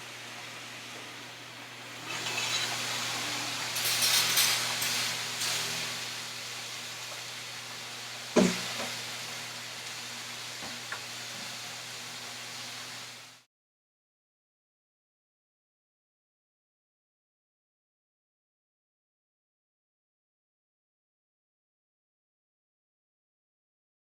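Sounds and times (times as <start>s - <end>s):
skewers sizzling on a skillet: 0.1s - 13.5s.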